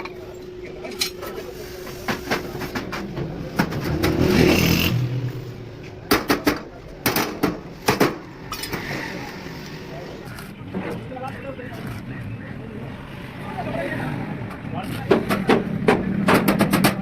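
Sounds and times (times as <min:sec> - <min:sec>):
vehicle engine passing: 0:03.0 - 0:06.1.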